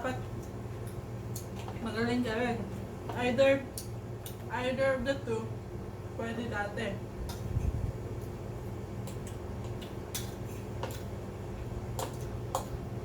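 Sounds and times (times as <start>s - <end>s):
steady low hum: 0.0s - 13.0s
cutlery clicking against dishes: 10.1s - 11.1s.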